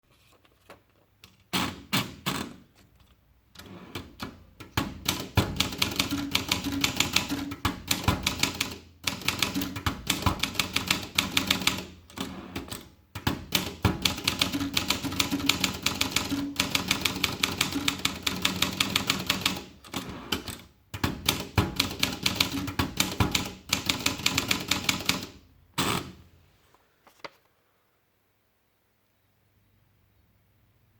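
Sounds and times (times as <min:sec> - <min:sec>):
typewriter keys clacking: 0:04.0 - 0:25.4.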